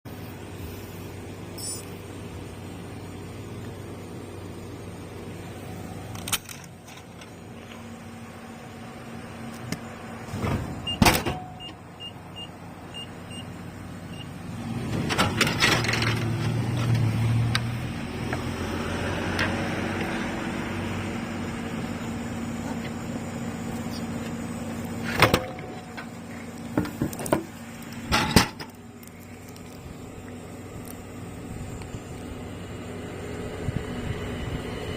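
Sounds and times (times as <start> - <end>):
short electronic beeps: 1.6 - 1.9, 10.8 - 14.3.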